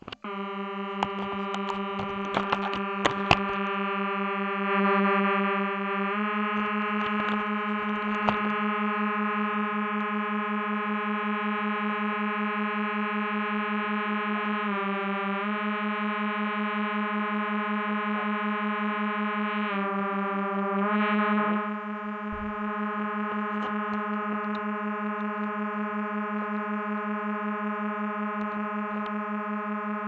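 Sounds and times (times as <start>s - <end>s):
electronic drone music: 0.0s - 10.1s, 19.7s - 30.0s.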